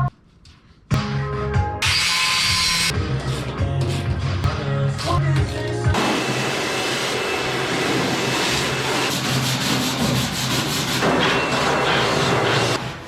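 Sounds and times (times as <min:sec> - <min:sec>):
abrasive tool scouring steel: 0:06.0 - 0:12.8.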